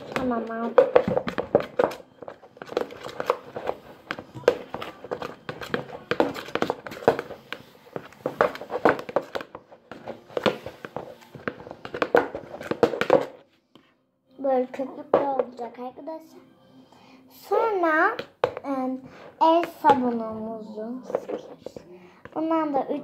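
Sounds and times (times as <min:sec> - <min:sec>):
spoon stirring wet mixture: 0:00.0 - 0:13.9.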